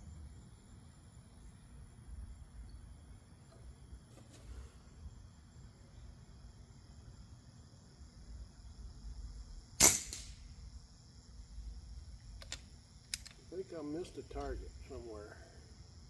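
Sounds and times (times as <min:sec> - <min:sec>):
insects trilling: 0:00.0 - 0:16.0
air rifle shot crack: 0:09.8 - 0:10.4.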